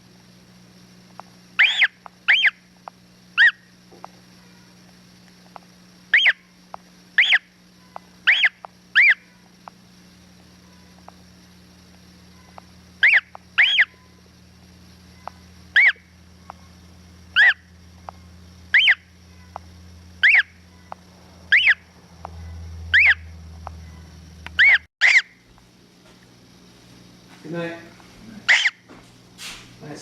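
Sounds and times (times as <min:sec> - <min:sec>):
steady low hum: 0:00.0 - 0:30.0
gull chick peeping: 0:01.6 - 0:02.6, 0:06.2 - 0:06.4, 0:07.2 - 0:07.5, 0:08.3 - 0:09.3, 0:13.0 - 0:14.0, 0:17.4 - 0:17.7, 0:18.7 - 0:19.1, 0:20.2 - 0:20.6, 0:21.5 - 0:21.8, 0:22.9 - 0:23.3, 0:24.5 - 0:25.3, 0:28.5 - 0:28.8.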